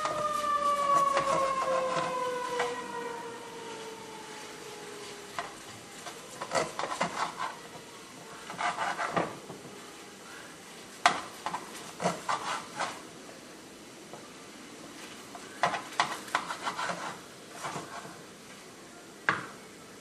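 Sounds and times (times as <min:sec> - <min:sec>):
utensil scraping in a pan: 0:00.0 - 0:02.9, 0:04.3 - 0:09.4, 0:10.7 - 0:13.1, 0:15.0 - 0:18.3.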